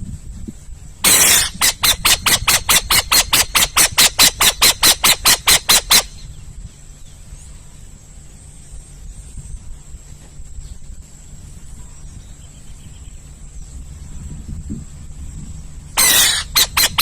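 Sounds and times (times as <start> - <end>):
owl calling: 1.0 - 6.3, 16.0 - 17.0.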